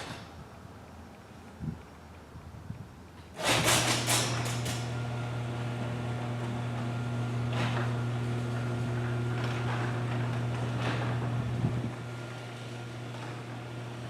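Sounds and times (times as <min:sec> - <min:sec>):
garage door motor humming: 0:03.4 - 0:14.0
garage door opener clattering: 0:03.4 - 0:14.0.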